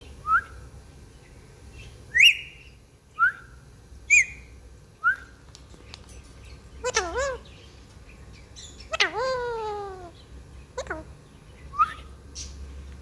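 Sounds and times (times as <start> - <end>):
parrot whistling calls: 2.1 - 2.6, 6.8 - 7.5, 8.6 - 10.2, 11.7 - 12.1.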